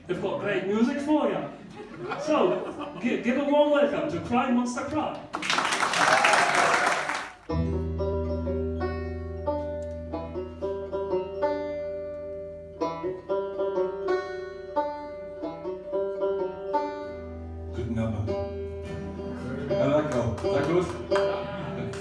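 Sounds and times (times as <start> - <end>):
plucked string instrument: 7.5 - 22.0.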